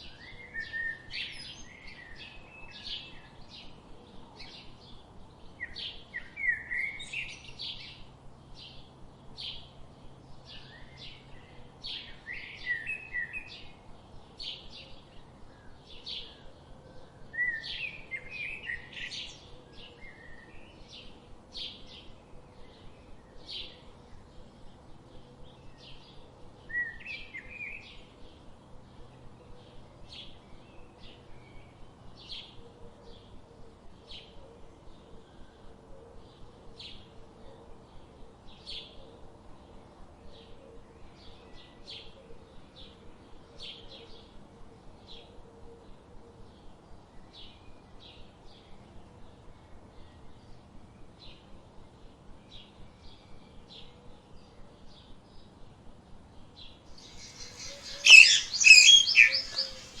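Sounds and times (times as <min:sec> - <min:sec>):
small birds chirping: 0:49.4 - 1:00.0
busy bird calls: 0:57.0 - 1:00.0.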